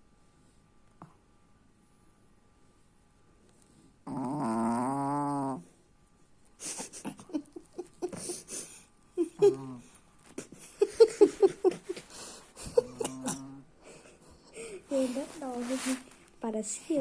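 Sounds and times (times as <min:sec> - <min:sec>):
small dog snoring: 0:03.7 - 0:05.8, 0:09.4 - 0:10.0, 0:12.8 - 0:13.7
people stifling laughter: 0:06.6 - 0:09.8, 0:10.4 - 0:14.2.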